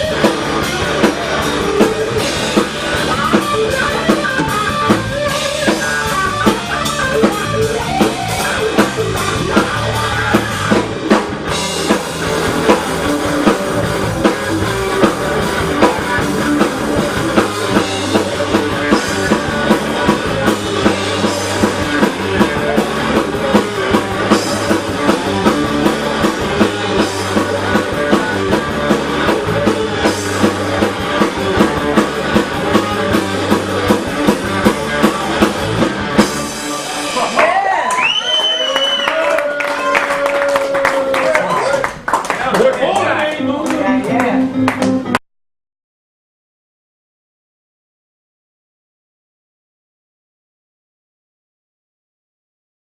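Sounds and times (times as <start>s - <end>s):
drum-kit beat: 0.0s - 38.0s
live blues-rock band: 0.0s - 42.4s, 43.4s - 45.2s
bass: 0.0s - 45.2s
guitar: 0.0s - 45.2s.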